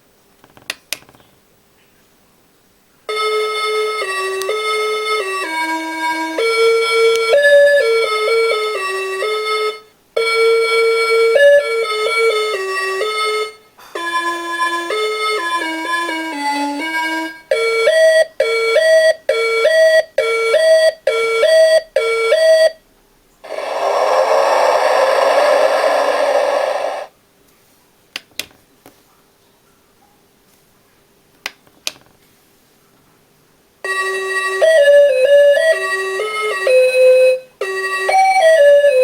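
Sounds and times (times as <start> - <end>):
harsh buzzing tone: 23.4 - 27.1.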